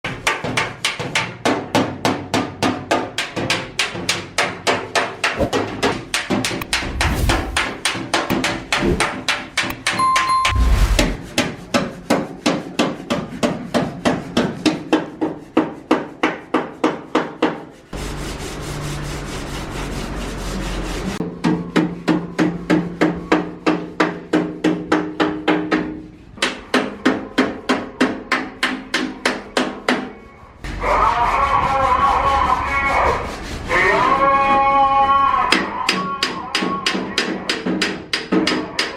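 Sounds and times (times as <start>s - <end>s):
low hum: 6.6s - 7.8s, 10.0s - 11.2s.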